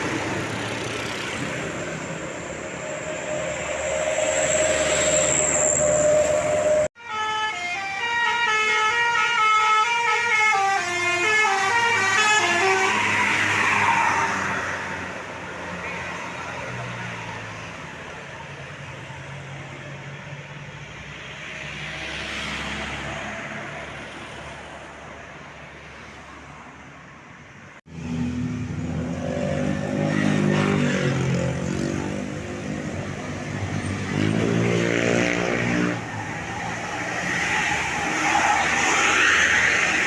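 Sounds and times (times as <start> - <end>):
road traffic: 0.0 - 40.0
bus horn playing multi-tone tune: 6.5 - 13.3.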